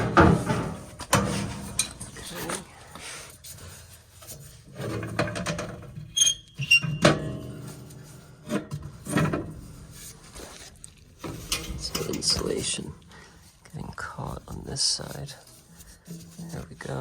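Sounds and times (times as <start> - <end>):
sheet metal knocks and clanks: 0.0 - 2.0.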